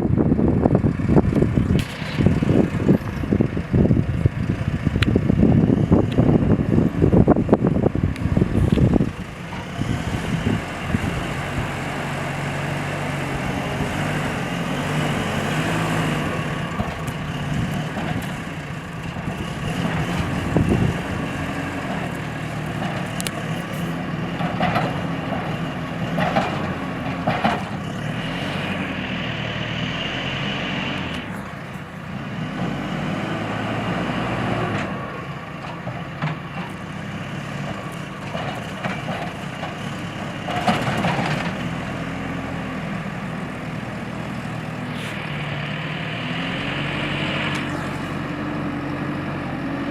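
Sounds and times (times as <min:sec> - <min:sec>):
construction machine engine running: 0:00.0 - 0:49.9.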